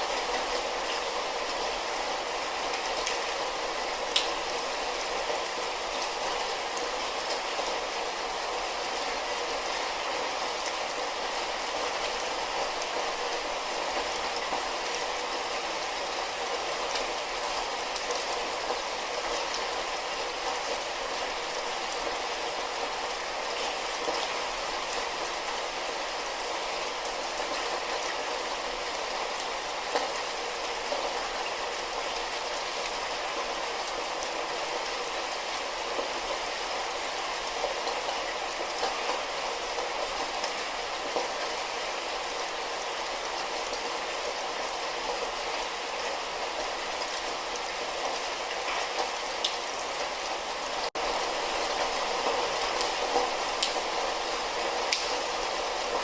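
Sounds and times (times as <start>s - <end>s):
light rain: 0.0s - 56.0s
raindrops tapping: 54.9s - 55.3s.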